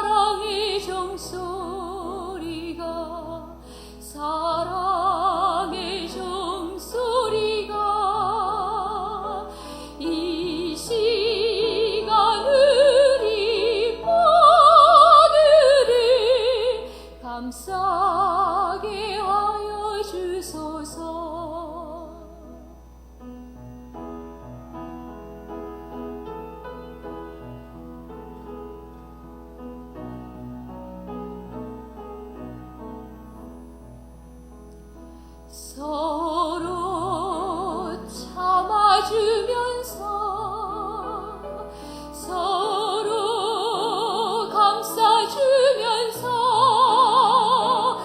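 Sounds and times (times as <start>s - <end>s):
woman singing operatically: 0.0s - 22.5s, 35.6s - 48.0s
piano: 0.0s - 48.0s.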